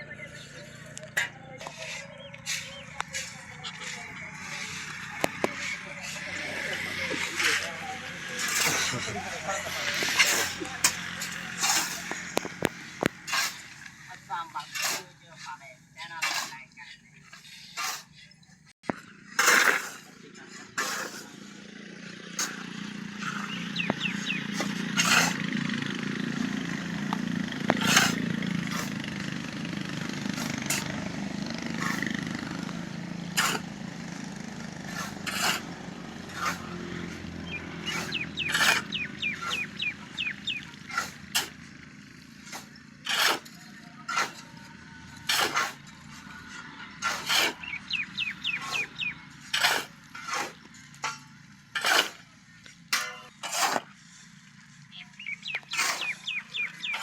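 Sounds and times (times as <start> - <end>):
metal clanks and knocks: 50.1 - 51.9, 52.9 - 53.5.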